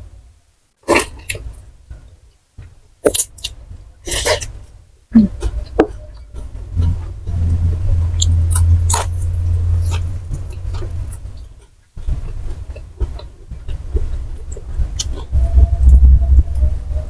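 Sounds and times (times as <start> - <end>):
low rumble: 5.2 - 17.0.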